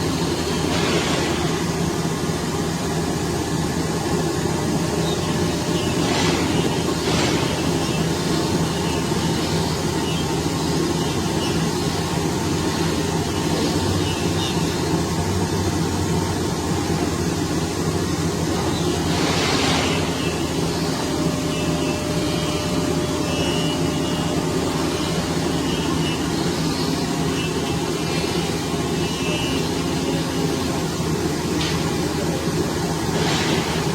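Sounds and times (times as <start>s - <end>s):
machine running with low hum: 0.0s - 33.9s.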